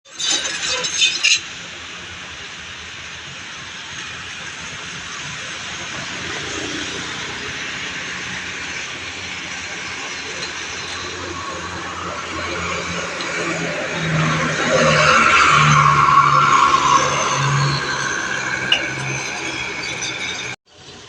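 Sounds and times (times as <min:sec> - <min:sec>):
passing traffic hiss: 0:01.4 - 0:21.0.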